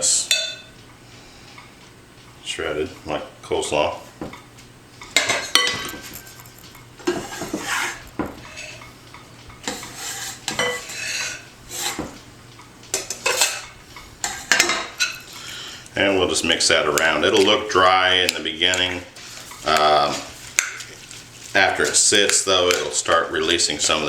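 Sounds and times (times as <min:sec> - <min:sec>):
utensil scraping against bowl: 0:05.0 - 0:08.9, 0:09.6 - 0:12.1, 0:13.1 - 0:16.1.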